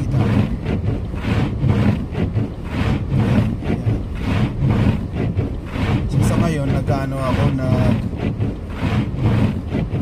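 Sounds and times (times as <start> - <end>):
car engine and road rumble: 0.0 - 10.0
gusting wind: 0.0 - 10.0.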